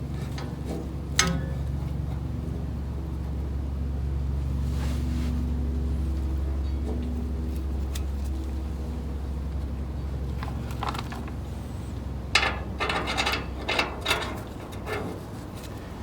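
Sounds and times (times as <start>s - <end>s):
steady low hum: 11.4s - 16.0s.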